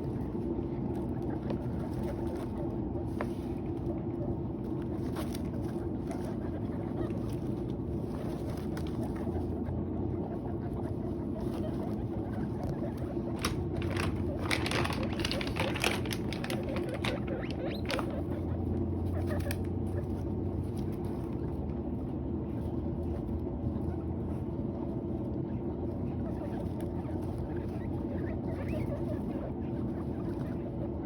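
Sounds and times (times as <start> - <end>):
guinea pigs munching hay: 0.0 - 31.0
steady low hum: 0.0 - 31.0
crisp crackles: 11.4 - 21.6.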